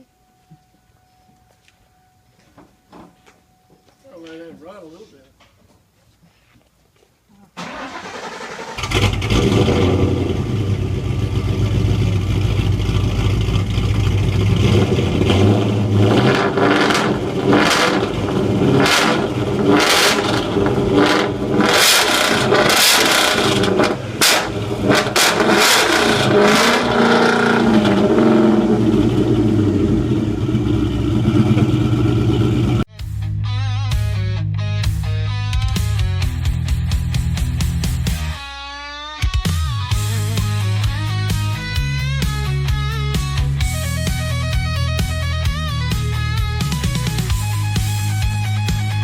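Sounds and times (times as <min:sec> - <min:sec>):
car engine cranking and running: 0:07.6 - 0:32.9
engine revving: 0:07.6 - 0:32.9.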